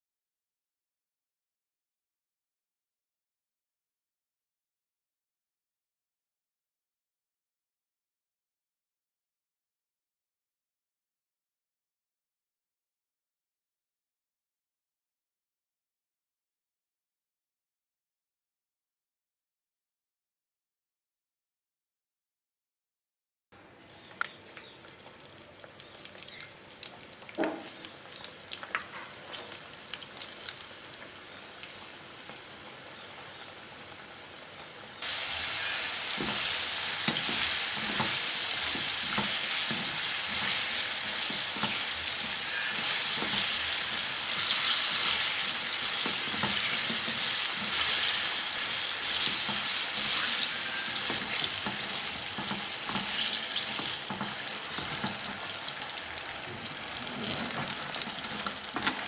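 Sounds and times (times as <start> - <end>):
chicken sizzling in hot oil: 24.8 - 59.0.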